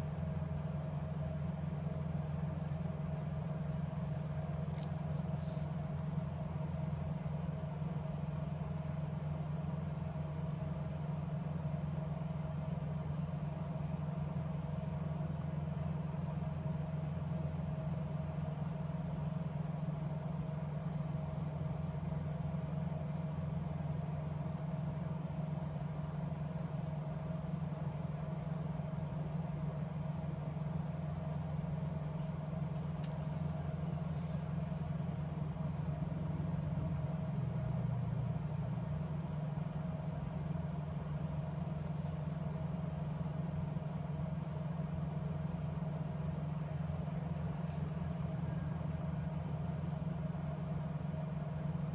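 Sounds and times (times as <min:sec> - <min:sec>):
faint constant tone: 0:00.0 - 0:51.9
low mechanical hum: 0:00.0 - 0:51.9.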